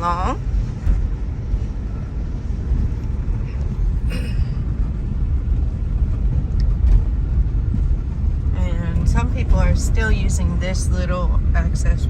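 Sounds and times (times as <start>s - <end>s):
car road noise rumble: 0.0s - 12.0s.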